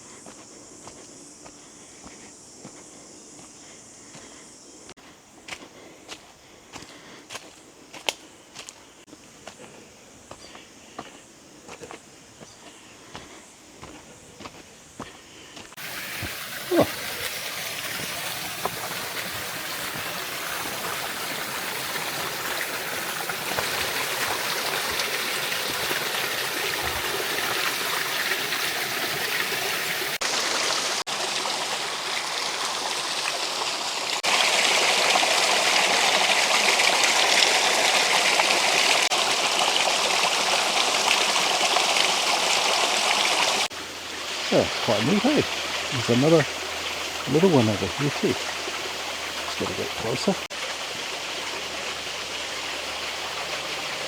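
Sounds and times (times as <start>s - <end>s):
stream and waterfall rushing: 15.8s - 54.0s.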